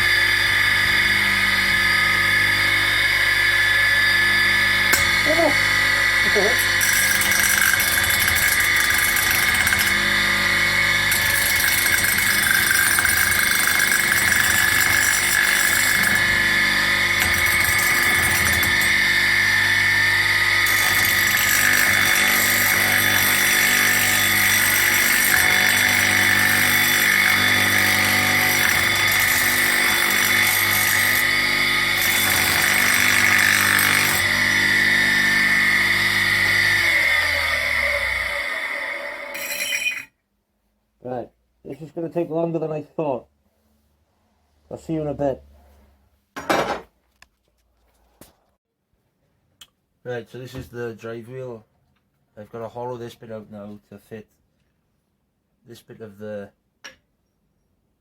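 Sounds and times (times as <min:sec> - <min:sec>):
electric motor hum: 0:00.0 - 0:40.0
high rasping grinding whine: 0:00.0 - 0:40.2.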